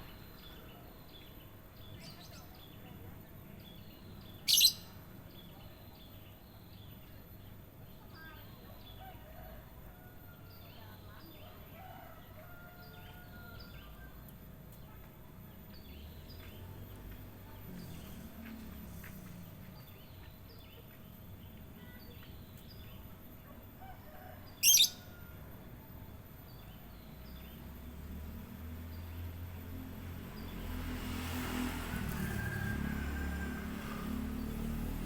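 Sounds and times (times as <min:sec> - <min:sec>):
songbirds chirping: 0:00.0 - 0:35.0.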